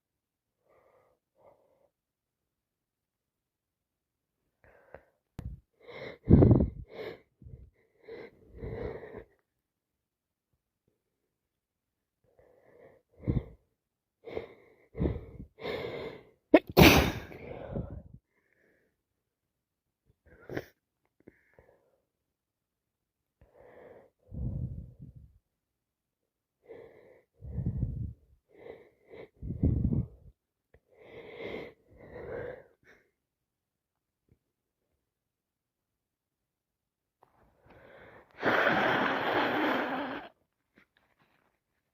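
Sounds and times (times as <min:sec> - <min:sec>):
breaths: 0:00.6 - 0:02.0, 0:04.6 - 0:09.5, 0:12.2 - 0:16.4, 0:17.2 - 0:19.0, 0:20.2 - 0:22.2, 0:23.4 - 0:25.4, 0:26.6 - 0:33.2, 0:37.2 - 0:40.4
person sneezing: 0:16.6 - 0:17.4, 0:38.4 - 0:40.3.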